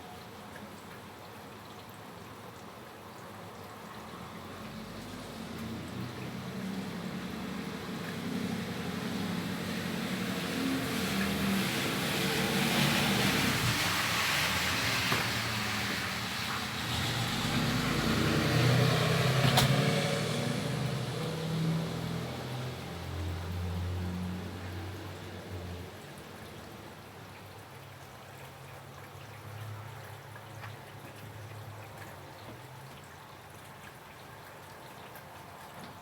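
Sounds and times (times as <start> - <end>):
car tyres hissing on wet road: 6.4 - 25.8.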